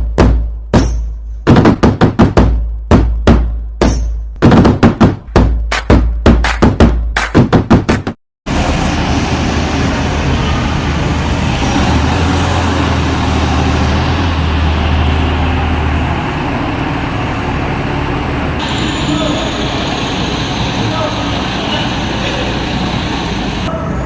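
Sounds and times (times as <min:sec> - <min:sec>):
outdoor background noise: 0:08.5 - 0:24.0
vehicle engine humming: 0:08.5 - 0:24.0.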